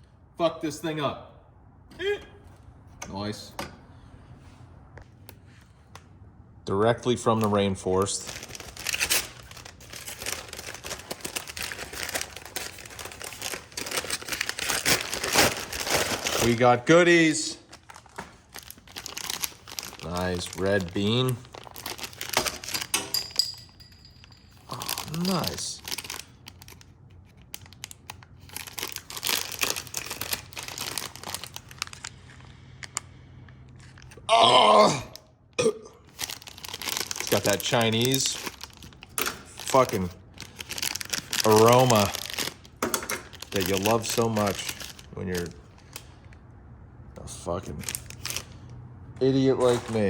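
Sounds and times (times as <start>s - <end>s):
packaging crinkling: 7.9s - 23.6s, 24.2s - 33.1s, 36.1s - 46.3s, 47.7s - 48.8s.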